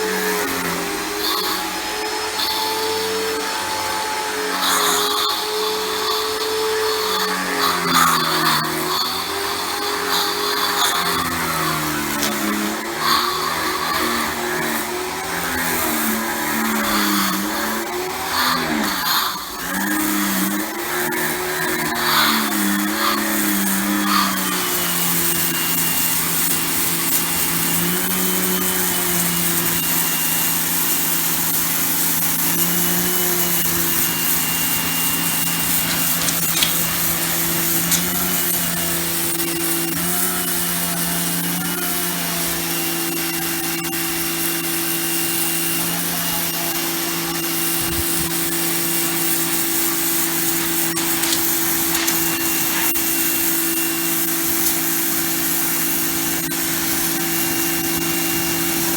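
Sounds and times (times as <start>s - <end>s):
pressure washer motor whine: 19.7s - 58.9s
water spray hissing: 24.5s - 39.8s, 48.0s - 58.8s.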